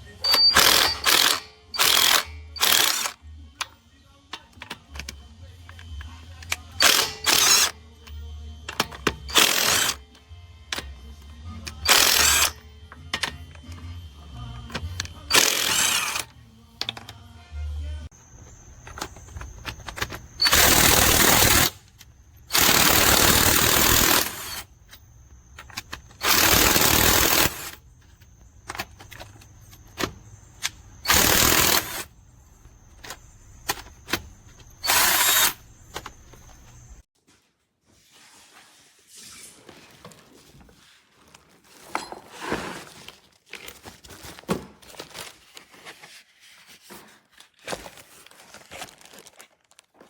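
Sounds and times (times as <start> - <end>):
impact wrench hammering: 0.2 - 3.1, 6.8 - 7.7, 18.8 - 21.8, 22.5 - 24.7, 25.6 - 27.8, 31.0 - 32.1.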